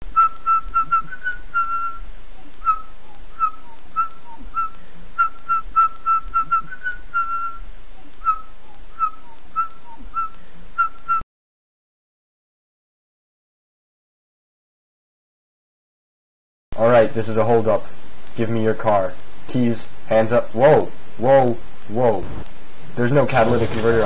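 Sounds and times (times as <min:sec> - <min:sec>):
whistled tune: 0:00.1 - 0:02.0, 0:02.6 - 0:07.6.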